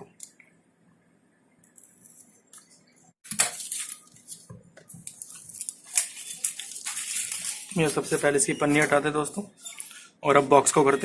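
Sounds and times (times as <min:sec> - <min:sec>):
plastic wrap tearing and crinkling: 0:03.2 - 0:09.1.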